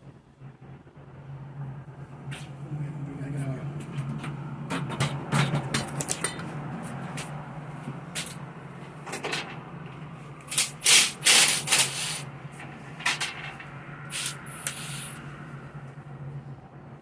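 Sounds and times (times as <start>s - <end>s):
hissing rubbing bursts: 10.5s - 12.3s, 14.1s - 15.2s.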